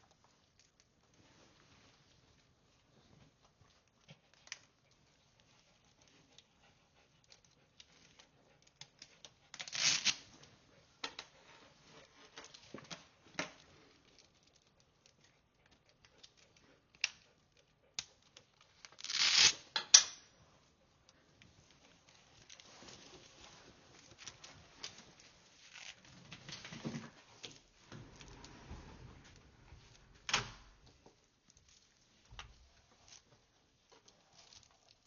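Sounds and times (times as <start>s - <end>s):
clothing rustling on microphone: 21.2s - 30.2s.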